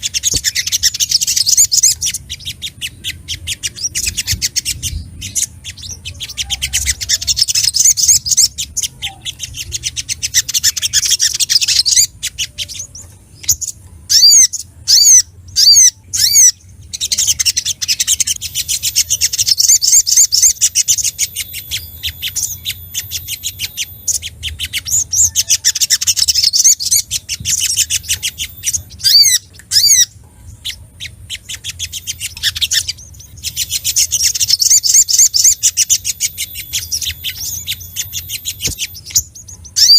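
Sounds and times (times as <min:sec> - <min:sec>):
bird rapid high chipping notes: 0:00.0 - 0:39.9
bird slurred calls: 0:00.0 - 0:39.9.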